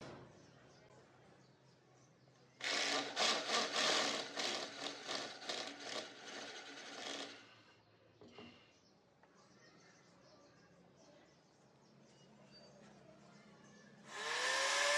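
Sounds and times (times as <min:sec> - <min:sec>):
tool rasping through wood: 0:02.6 - 0:07.4.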